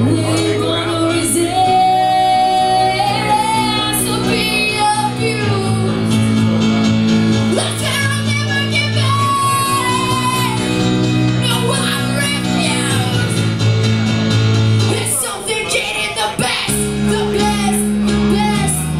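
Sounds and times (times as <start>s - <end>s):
woman singing: 0.0s - 6.3s, 7.5s - 10.8s, 11.4s - 13.4s, 14.9s - 18.9s
sustained musical accompaniment: 0.0s - 15.0s.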